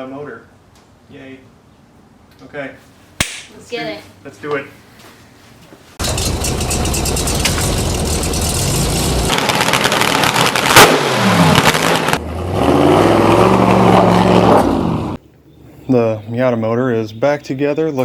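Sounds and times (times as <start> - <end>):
sharp bang: 3.2 - 3.6
car engine revving: 6.0 - 15.2.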